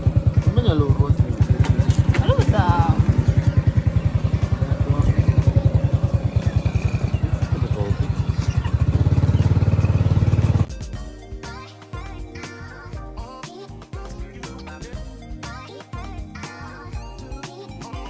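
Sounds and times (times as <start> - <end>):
background music: 0.0 - 8.2, 8.8 - 18.0
small motorcycle engine running: 0.0 - 10.7.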